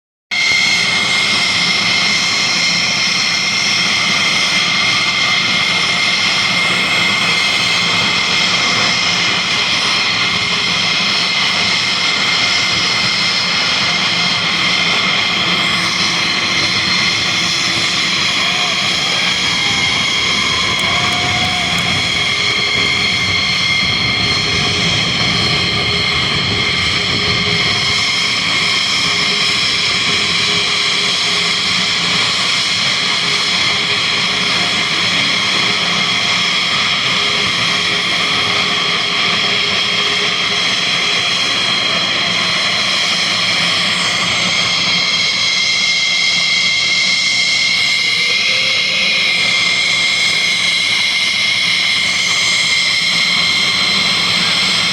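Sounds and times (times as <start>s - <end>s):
jet engines whining: 0.4s - 54.9s
rushing jet roar: 0.4s - 54.9s.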